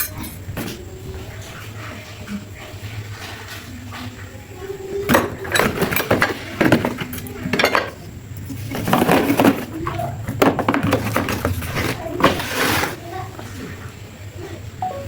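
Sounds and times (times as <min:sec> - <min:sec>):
metal objects clinking: 0:00.0 - 0:00.4.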